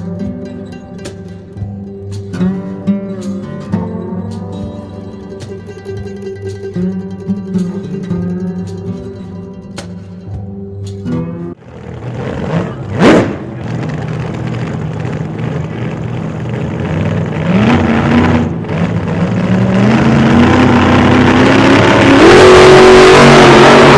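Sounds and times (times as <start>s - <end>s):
engine accelerating: 11.2s - 23.9s.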